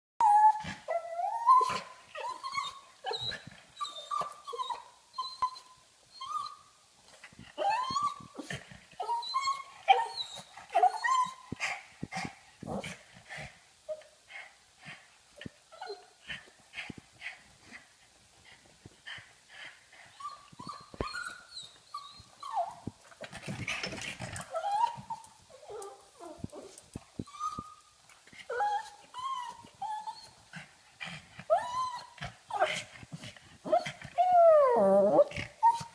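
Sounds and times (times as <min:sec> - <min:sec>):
dog whining: 0:00.2 - 0:06.6, 0:07.6 - 0:11.6, 0:20.2 - 0:22.9, 0:23.8 - 0:27.8, 0:31.5 - 0:32.8, 0:33.7 - 0:35.9.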